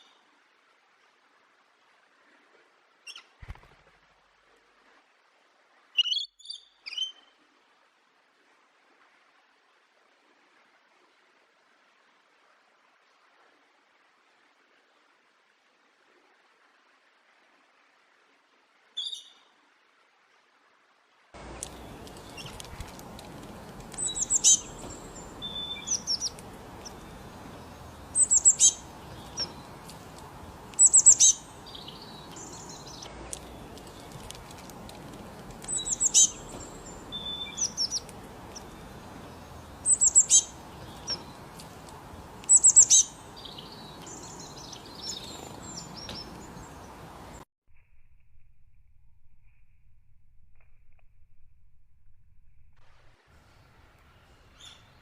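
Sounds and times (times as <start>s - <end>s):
steady background hiss: 21.3s - 47.4s
bird chirping: 21.4s - 47.4s, 54.2s - 55.0s.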